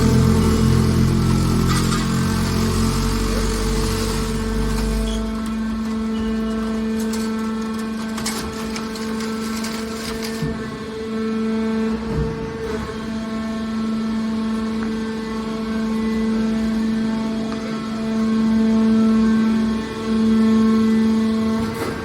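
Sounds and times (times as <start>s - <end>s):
deep machine rumble: 0.0s - 8.7s
hydraulic power unit hum: 0.0s - 22.0s.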